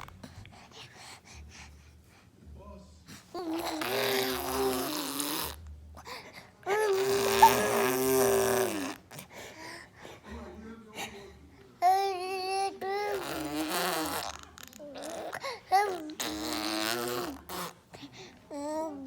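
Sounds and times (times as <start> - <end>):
baby blowing raspberries: 3.4 - 5.7, 6.7 - 9.3, 12.8 - 17.9.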